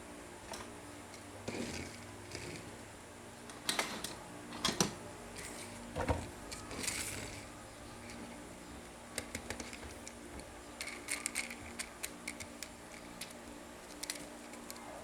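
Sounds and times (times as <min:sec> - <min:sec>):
faint steady hum: 0:00.0 - 0:15.0
toys clicking and knocking: 0:09.2 - 0:10.2, 0:10.8 - 0:14.9.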